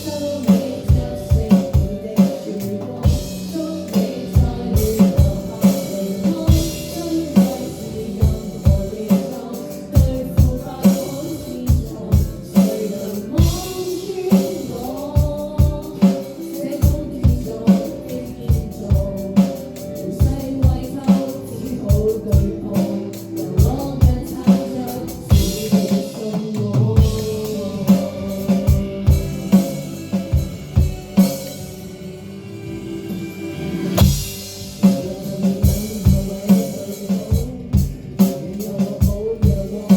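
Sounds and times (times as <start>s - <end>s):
band music: 0.0s - 39.9s
drum kit beat: 0.0s - 39.9s.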